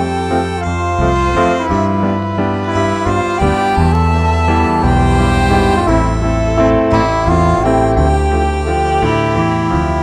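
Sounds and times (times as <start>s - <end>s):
sustained organ-like keyboard notes: 0.0s - 10.0s.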